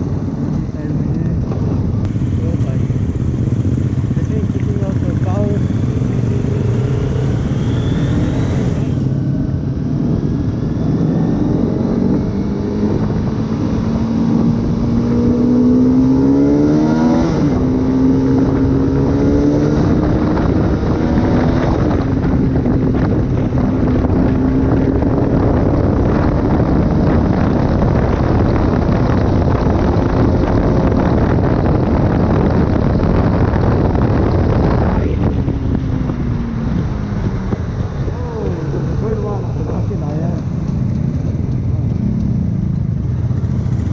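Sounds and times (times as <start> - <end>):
motorcycle engine accelerating: 0.0 - 43.9
wind rushing: 0.0 - 43.9.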